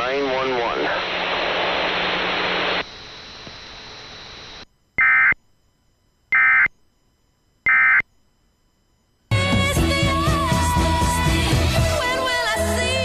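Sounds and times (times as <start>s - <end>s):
static hiss: 0.0s - 5.4s
screechy digital data tone bursts: 4.0s - 5.4s.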